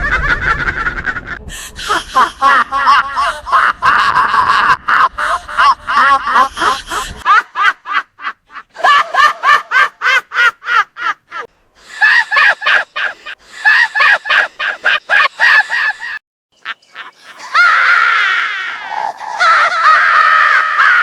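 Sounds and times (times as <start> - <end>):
witch cackling laughter: 0.0 - 21.0.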